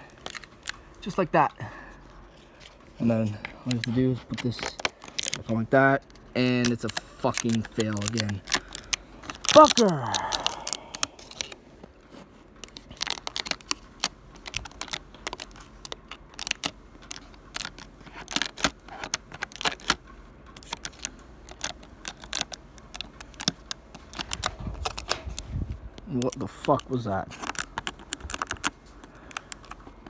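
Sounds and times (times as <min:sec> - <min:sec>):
hands taping with foil tape: 0:03.6 - 0:11.6, 0:12.6 - 0:30.0.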